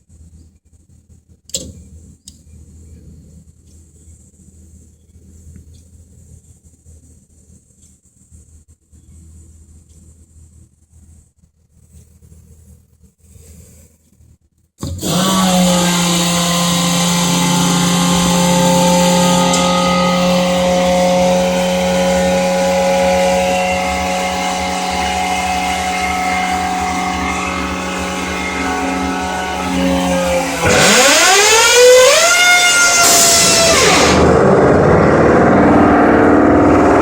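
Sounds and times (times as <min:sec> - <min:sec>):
compressor engine running: 0:14.8 - 0:37.0.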